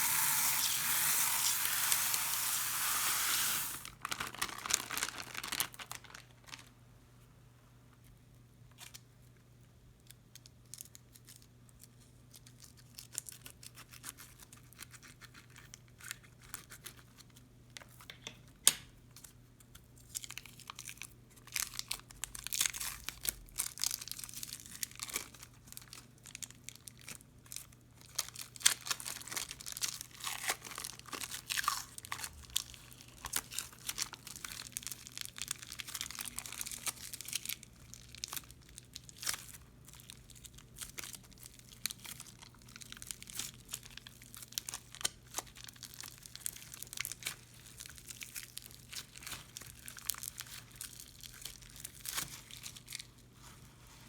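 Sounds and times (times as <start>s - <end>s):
crunchy slime crackling and popping: 3.5s - 6.7s, 20.1s - 53.1s.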